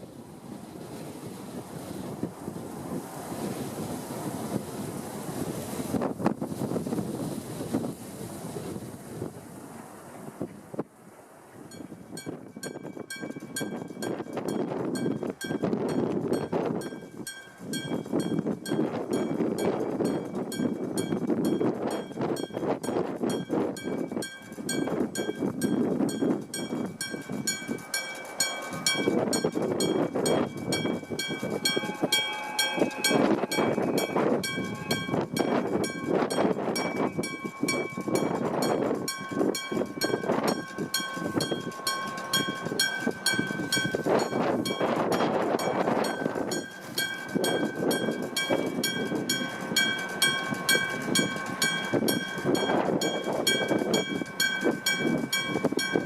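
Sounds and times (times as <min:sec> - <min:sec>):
freight train rumbling: 0:00.0 - 0:56.0
level-crossing bell ringing: 0:23.8 - 0:56.0.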